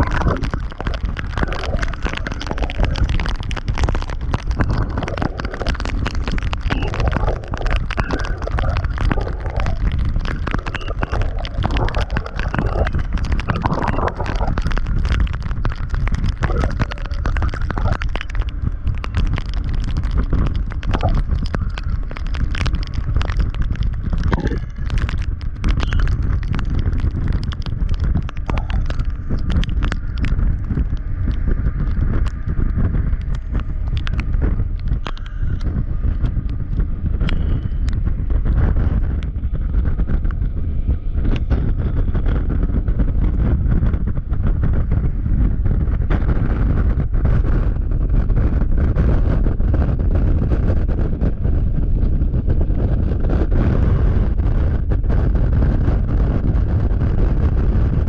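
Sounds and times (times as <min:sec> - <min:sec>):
wind buffeting camera microphone: 0:00.0 - 0:58.0.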